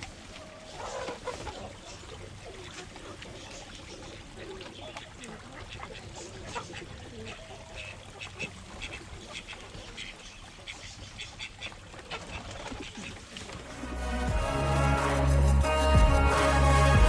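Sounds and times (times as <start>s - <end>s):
ducks quacking: 0.0s - 17.0s
music: 13.7s - 17.0s.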